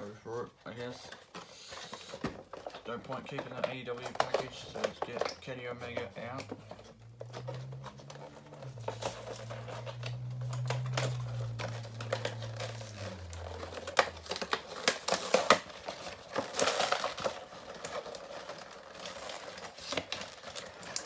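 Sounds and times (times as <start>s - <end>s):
plastic and cardboard crinkling: 0.0s - 21.0s
low hum: 6.4s - 14.9s.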